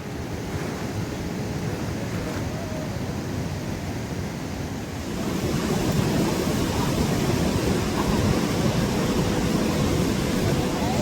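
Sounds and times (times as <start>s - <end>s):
fast river rushing: 0.0s - 11.0s.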